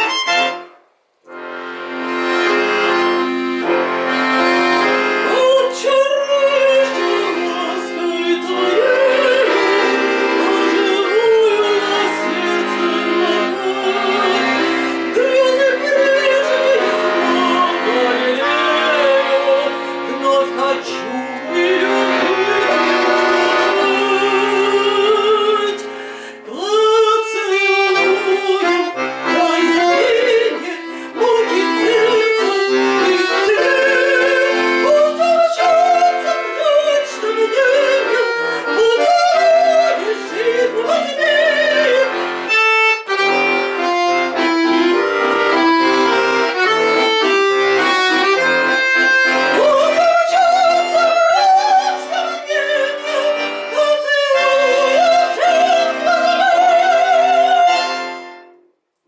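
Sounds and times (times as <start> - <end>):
instrumental accompaniment: 0.0 - 59.0
woman singing with vibrato: 5.2 - 42.6, 49.4 - 58.2.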